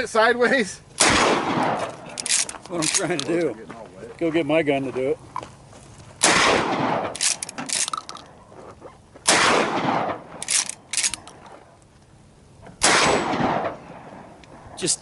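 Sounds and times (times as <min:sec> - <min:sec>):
loud gunshots: 0:01.0 - 0:01.9, 0:06.2 - 0:07.7, 0:09.3 - 0:10.7, 0:12.8 - 0:14.1
faint short cracks: 0:10.4 - 0:11.6.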